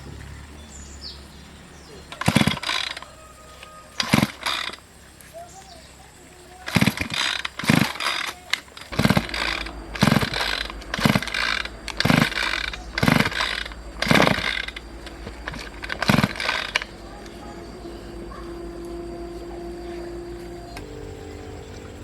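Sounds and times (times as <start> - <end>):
hand tool clicking rasp: 2.1 - 4.8, 6.6 - 18.4.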